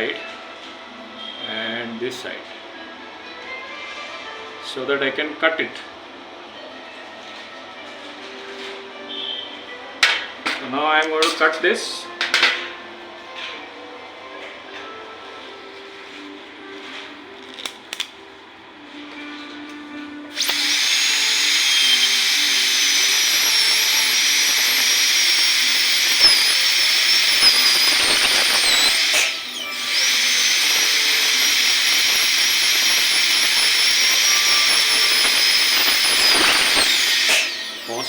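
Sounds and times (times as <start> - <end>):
dental drill whining through metal: 20.3 - 38.0.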